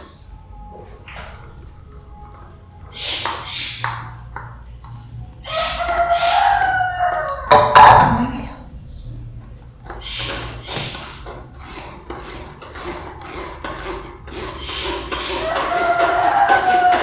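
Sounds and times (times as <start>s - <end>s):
utensils clinking against dishes: 0.0s - 17.0s
long animal call: 5.4s - 8.8s.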